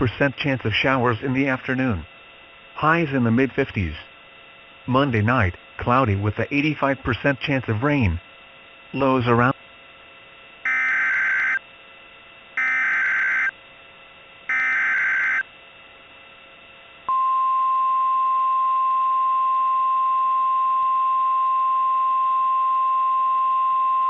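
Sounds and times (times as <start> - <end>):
steady single-pitch alert tone: 10.6 - 11.6, 12.6 - 13.5, 14.5 - 15.4, 17.1 - 24.0
warbling digital data bursts: 10.7 - 11.6, 12.6 - 13.5.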